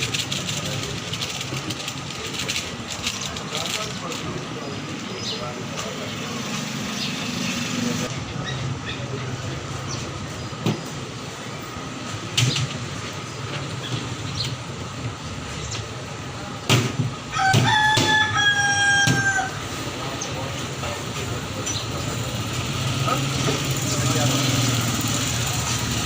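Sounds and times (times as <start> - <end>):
rooster crowing: 17.3 - 19.7.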